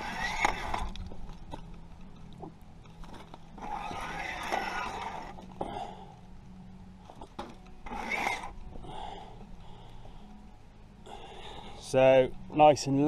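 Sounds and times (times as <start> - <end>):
scraping against concrete blocks: 3.0 - 5.8.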